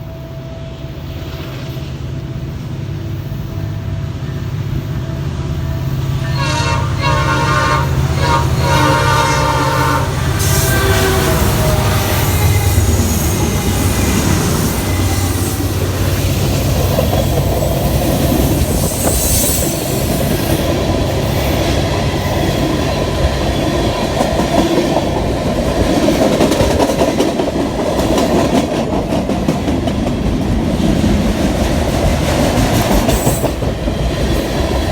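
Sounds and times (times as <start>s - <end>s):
locomotive engine rumble: 2.3s - 18.8s
train air horn blasts: 5.0s - 15.7s
freight cars clickety-clack: 10.4s - 19.2s, 19.8s - 34.9s.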